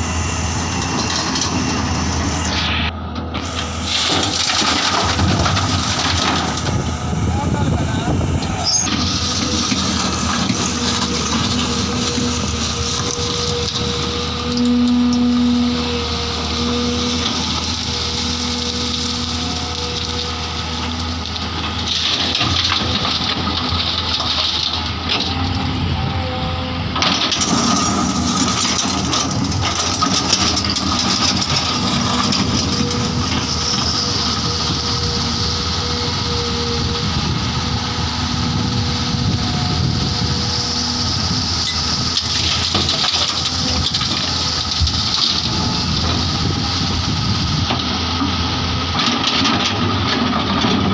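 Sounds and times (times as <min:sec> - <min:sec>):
diesel engine of earthmoving machine: 0:00.0 - 0:50.9.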